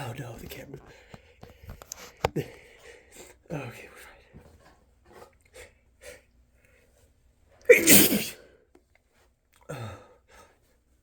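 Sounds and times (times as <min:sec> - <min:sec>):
man sneezing: 0:07.7 - 0:08.5.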